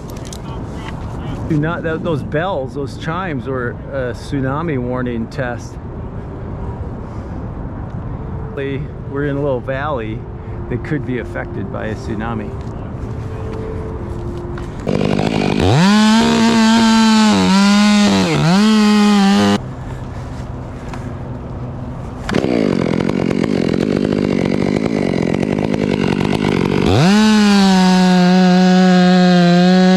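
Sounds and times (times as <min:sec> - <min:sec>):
chainsaw revving: 0:14.8 - 0:19.6, 0:22.3 - 0:29.9.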